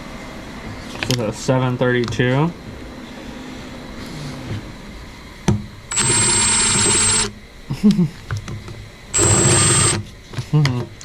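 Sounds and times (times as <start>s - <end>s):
electric drill whining: 5.9s - 7.4s, 9.1s - 10.1s.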